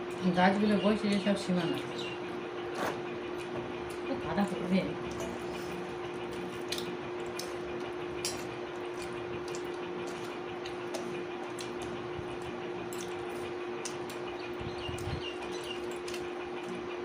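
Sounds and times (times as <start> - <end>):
steady low hum: 0.0 - 17.0
chewing food: 2.7 - 17.0.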